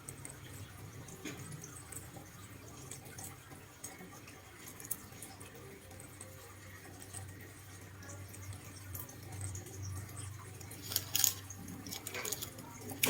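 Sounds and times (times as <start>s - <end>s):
small hard objects clinking: 10.8s - 13.0s.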